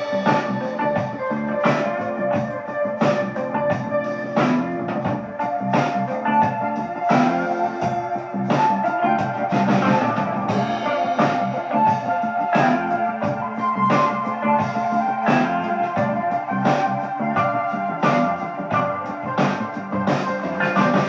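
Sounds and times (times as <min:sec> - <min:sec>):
rock music with guitar and drums: 0:00.0 - 0:21.0.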